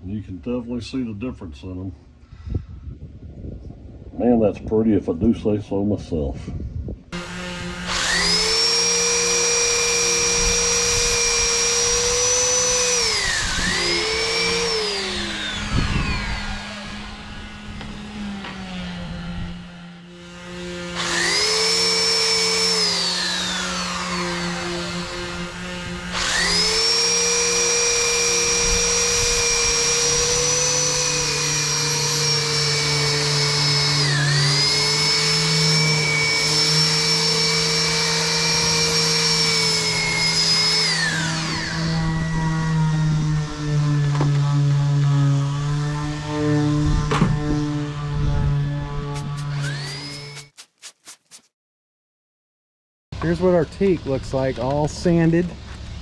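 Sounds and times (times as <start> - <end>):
electric power sander whining: 7.2 - 51.4.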